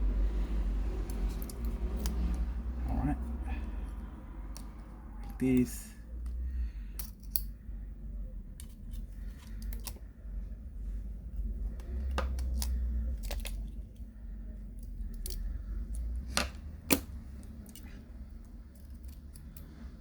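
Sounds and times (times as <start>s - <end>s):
low steady hum: 0.0s - 20.0s
small clicks and taps of tools: 4.5s - 5.4s, 7.0s - 7.5s.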